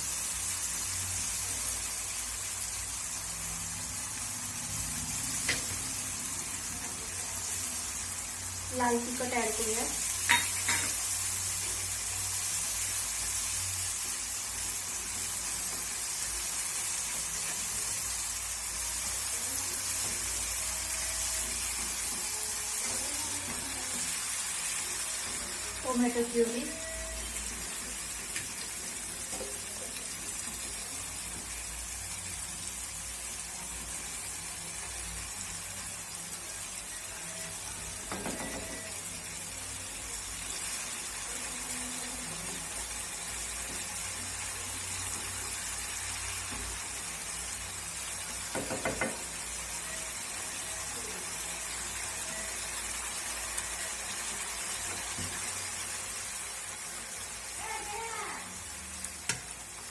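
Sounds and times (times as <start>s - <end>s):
gravy sizzling in a pan: 0.0s - 59.9s.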